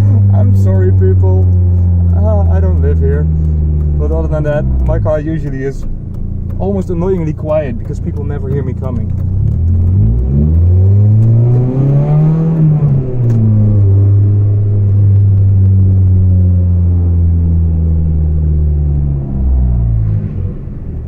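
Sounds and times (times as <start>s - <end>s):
car engine through leaking exhaust: 0.0s - 21.0s.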